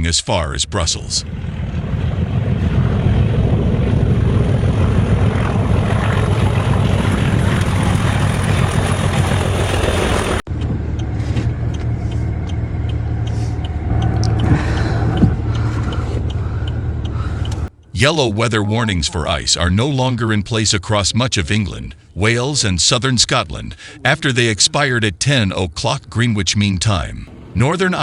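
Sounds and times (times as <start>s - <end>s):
vehicle engine and road rumble: 1.1s - 20.0s, 21.6s - 28.0s
faint evenly spaced ticks: 11.7s - 18.0s.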